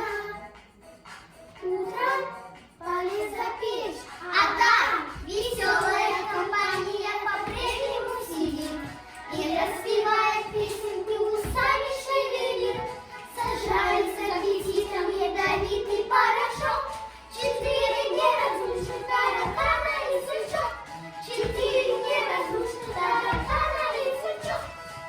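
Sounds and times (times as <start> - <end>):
children singing: 0.0 - 0.6, 1.6 - 25.0.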